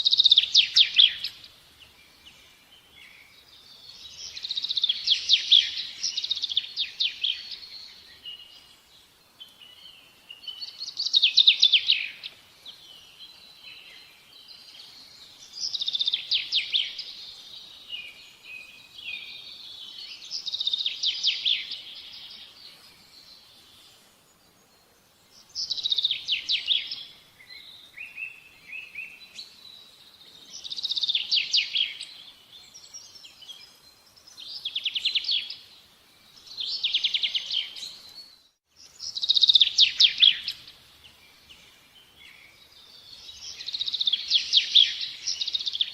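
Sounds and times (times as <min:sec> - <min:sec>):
songbird trilling: 0:39.0 - 0:40.7.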